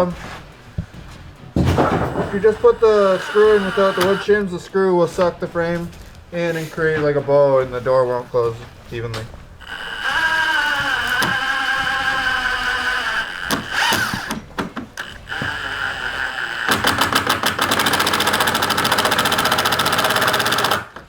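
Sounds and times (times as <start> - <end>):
power driver hammering rattle: 0.0 - 7.8, 9.1 - 21.0
power driver motor whine: 2.2 - 4.5, 9.6 - 17.0
sharp clicks: 2.3 - 4.4.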